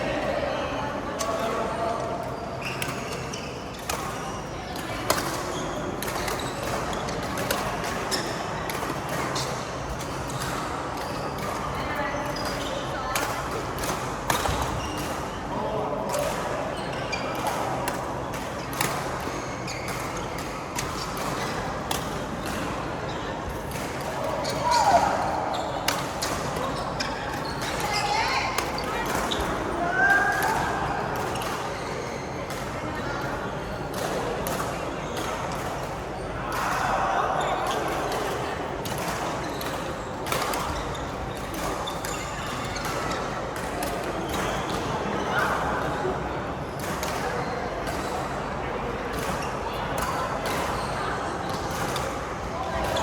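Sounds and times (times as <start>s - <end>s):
hall hubbub: 0.0s - 53.0s
shoe squeaks: 2.3s - 9.4s, 14.4s - 15.1s, 16.6s - 17.8s, 19.3s - 21.7s, 24.3s - 30.6s, 31.4s - 33.2s, 40.4s - 43.3s, 50.5s - 51.6s.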